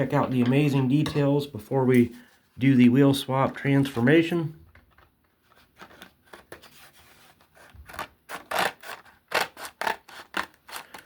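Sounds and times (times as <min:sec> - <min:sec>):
plastic and card crinkling tearing: 0:05.4 - 0:11.0.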